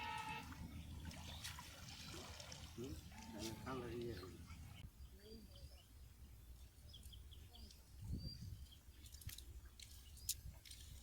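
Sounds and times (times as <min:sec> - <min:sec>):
small birds chirping: 0:00.7 - 0:11.0.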